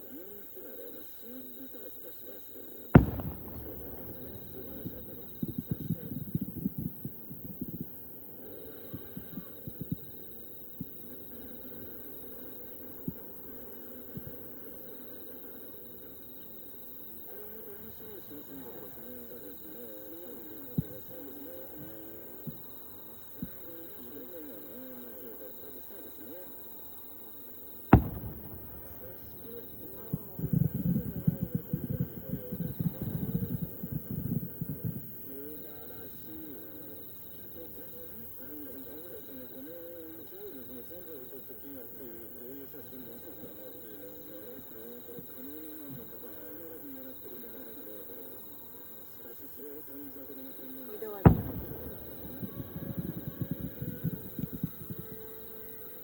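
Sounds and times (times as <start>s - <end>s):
faint insect trill: 0.0s - 56.0s
distant firework shells bursting: 2.9s - 8.4s, 27.9s - 39.1s, 51.0s - 56.0s
distant voice talking: 3.0s - 6.2s, 28.0s - 33.7s, 49.7s - 55.7s.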